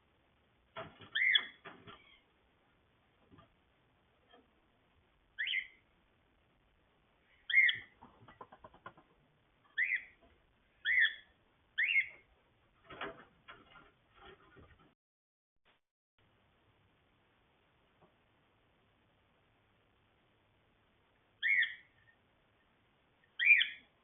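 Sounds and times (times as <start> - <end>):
cockatiel chirping: 1.1 - 2.2, 5.4 - 5.8, 7.3 - 8.0, 9.7 - 10.2, 10.8 - 12.2, 21.4 - 22.2, 23.2 - 24.0.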